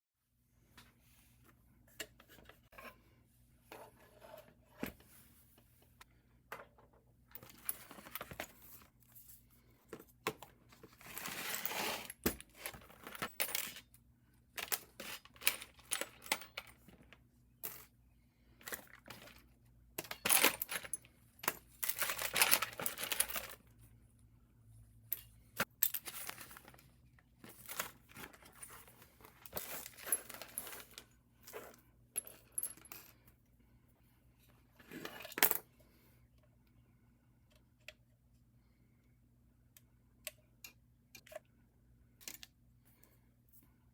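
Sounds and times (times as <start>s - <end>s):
rustling or scraping: 7.4s - 13.7s
small hard parts clinking: 20.0s - 23.8s.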